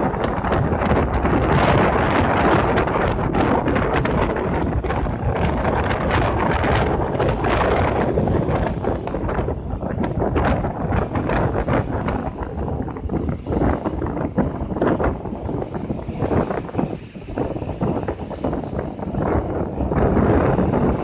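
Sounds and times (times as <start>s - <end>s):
storm surf: 0.0s - 21.0s
wind gusting against microphone: 0.0s - 21.0s.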